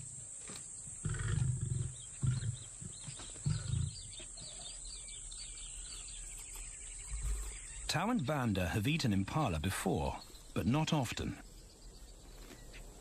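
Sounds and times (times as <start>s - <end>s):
deep pulsing animal grunts: 1.0s - 4.1s
faint bird chirps: 1.3s - 13.0s.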